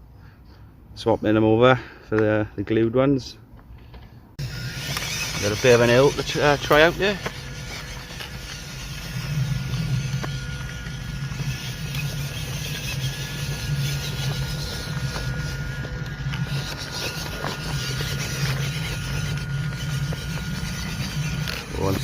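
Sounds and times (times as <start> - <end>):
small electric motor whining: 4.4 - 22.0.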